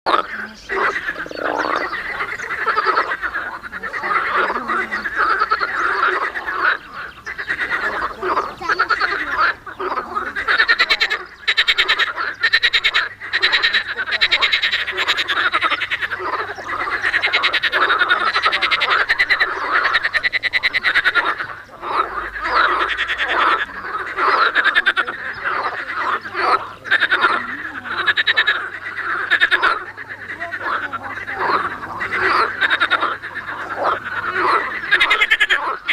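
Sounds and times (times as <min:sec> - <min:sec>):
frogs croaking: 0:00.1 - 0:35.9.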